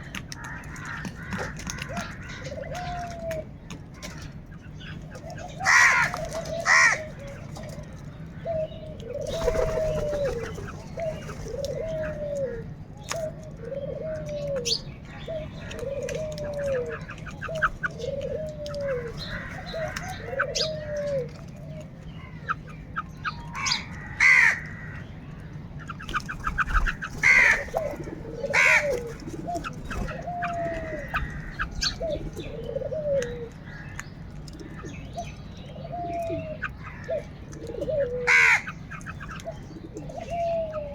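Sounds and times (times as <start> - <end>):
crows cawing: 0.4 - 3.0, 5.6 - 7.1, 17.6 - 21.3, 23.5 - 25.1, 26.7 - 29.2, 30.0 - 32.2, 38.2 - 38.8.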